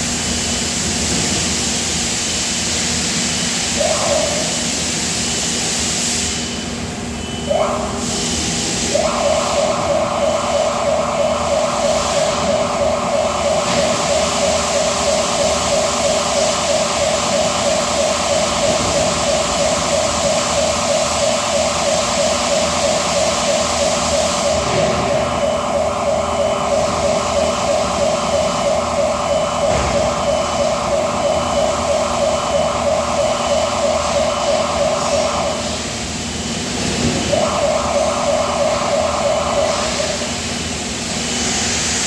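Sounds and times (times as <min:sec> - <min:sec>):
factory machinery hiss: 0:00.0 - 0:10.0, 0:10.6 - 0:32.9, 0:39.6 - 0:42.0
fast-pulsing mechanical tone: 0:03.8 - 0:04.8, 0:08.9 - 0:35.8, 0:37.3 - 0:40.4.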